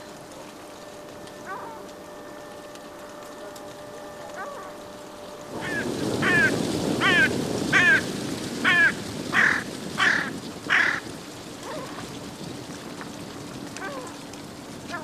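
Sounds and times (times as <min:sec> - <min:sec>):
gulls calling: 0:00.0 - 0:12.3, 0:13.7 - 0:15.0
rushing noise: 0:05.4 - 0:11.6.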